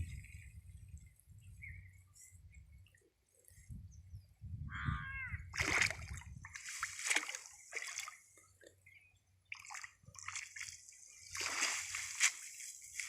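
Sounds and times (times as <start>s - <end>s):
water splashing and sloshing: 5.5s - 13.0s.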